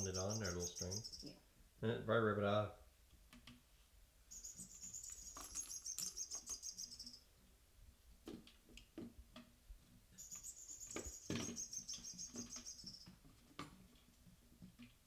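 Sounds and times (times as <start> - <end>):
toy bird chirping: 0.0 - 1.3, 4.3 - 7.2.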